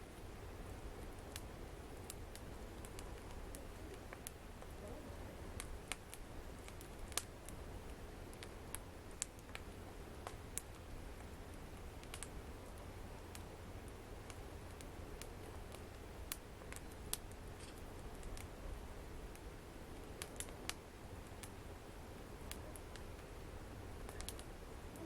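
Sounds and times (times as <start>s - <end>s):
low steady hum: 0.0s - 25.0s
wood fire crackling and popping: 0.0s - 25.0s.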